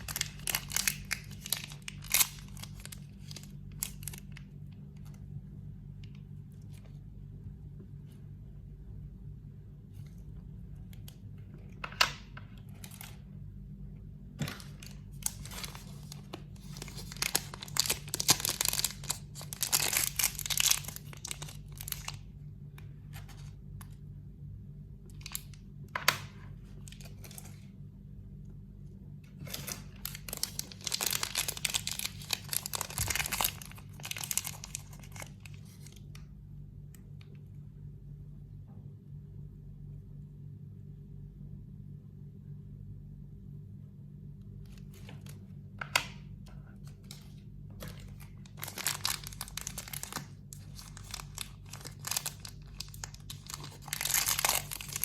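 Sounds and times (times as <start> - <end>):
packaging rustling and tearing: 0.0 - 5.2, 12.6 - 13.2, 14.4 - 22.3, 26.7 - 27.7, 29.4 - 36.2, 46.8 - 55.0
steady low hum: 0.0 - 55.0.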